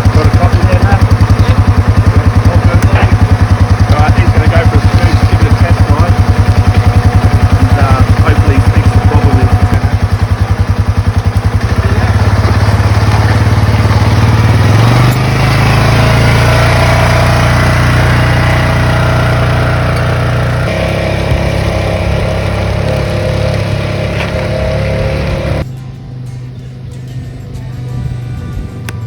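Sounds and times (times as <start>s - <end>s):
single-cylinder engine running: 0.0s - 29.0s.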